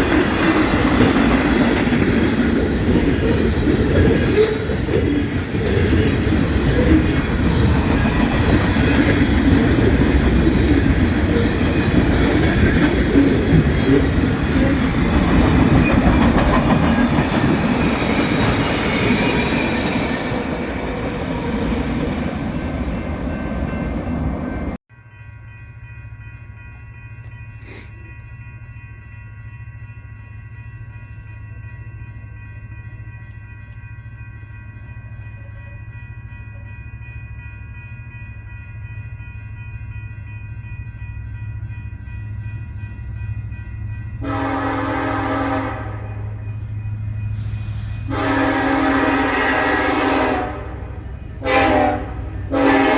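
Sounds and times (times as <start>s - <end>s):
train wheels on rails: 0.0s - 24.8s, 25.8s - 52.9s
train low rumble: 0.0s - 52.9s.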